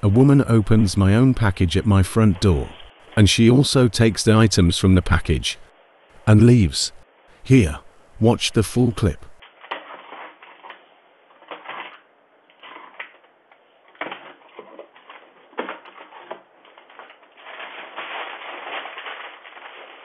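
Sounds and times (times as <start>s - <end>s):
packaging tearing and rustling: 9.4s - 13.3s, 13.9s - 20.0s.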